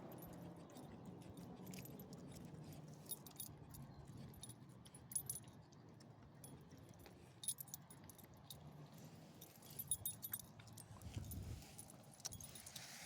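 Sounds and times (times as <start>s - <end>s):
light metal jingling: 0.0s - 5.5s, 6.4s - 13.0s.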